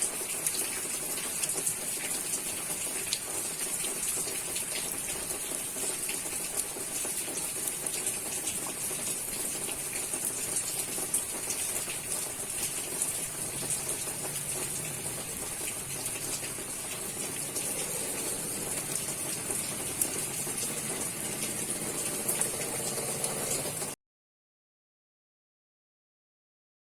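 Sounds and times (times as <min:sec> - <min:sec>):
steady rain falling: 0:00.0 - 0:24.0.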